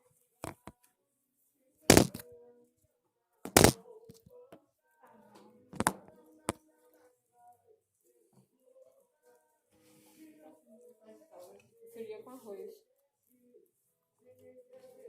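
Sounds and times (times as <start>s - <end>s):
knocks on phone microphone: 1.9s - 2.2s, 3.5s - 3.8s.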